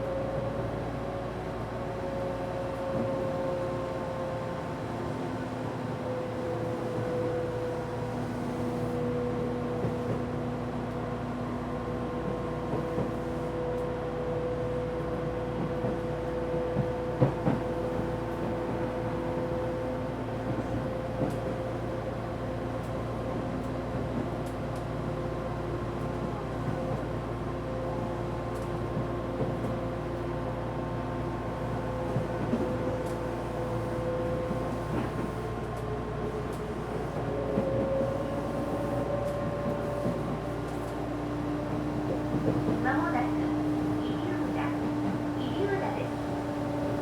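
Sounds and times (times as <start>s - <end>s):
electric train rumble: 0.0s - 47.0s.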